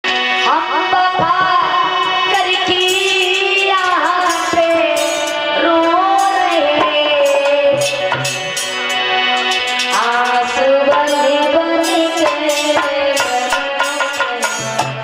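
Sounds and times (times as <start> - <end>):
drum strokes: 2.0 - 15.0
gliding wavering melody: 2.4 - 12.9.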